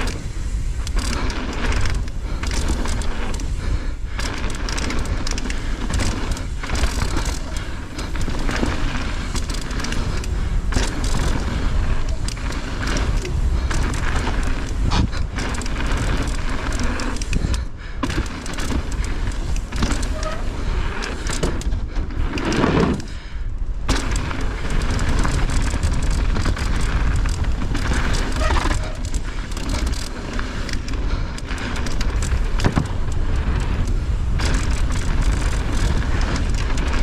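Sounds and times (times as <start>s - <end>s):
tyres rolling over dirt: 0.0s - 23.1s, 23.8s - 37.0s
bike rattling: 0.0s - 37.0s
wind rumble on microphone: 0.0s - 37.0s.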